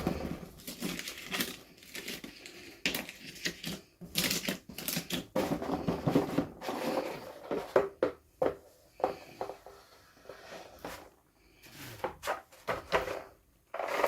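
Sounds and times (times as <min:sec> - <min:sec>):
plastic packaging clicks and rustles: 0:00.0 - 0:06.6.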